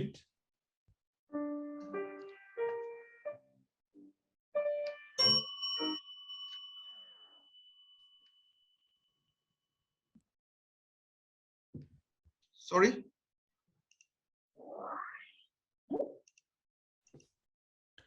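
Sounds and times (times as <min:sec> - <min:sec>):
bright bell-like ding: 0:05.2 - 0:08.5.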